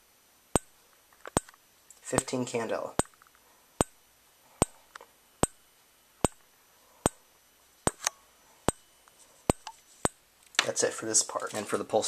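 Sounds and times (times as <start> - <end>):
strobe flash clicks: 0.5 - 2.4, 3.0 - 4.0, 4.6 - 7.2.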